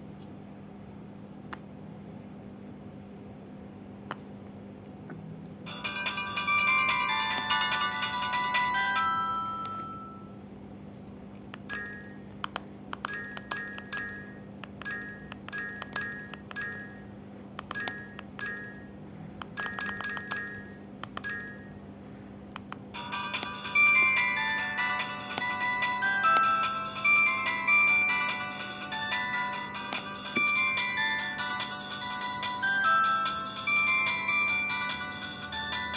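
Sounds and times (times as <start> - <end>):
faint steady hum: 0.0 - 35.9
chiming tune: 5.7 - 10.4, 13.1 - 17.1, 23.0 - 35.9
mobile phone ringtones: 5.7 - 10.4, 11.7 - 12.2, 13.1 - 17.1, 17.7 - 18.9, 19.6 - 21.8, 23.0 - 35.9
plinking ringtone with clicks: 5.7 - 10.4, 11.6 - 12.3, 13.0 - 21.8, 23.0 - 35.9.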